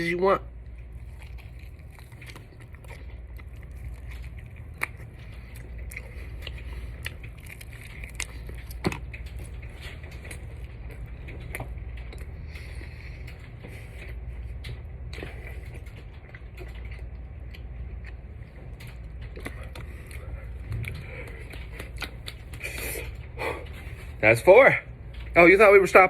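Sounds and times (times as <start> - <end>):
steady low hum: 0.0 - 26.0
chewing chicken wing: 0.6 - 24.2.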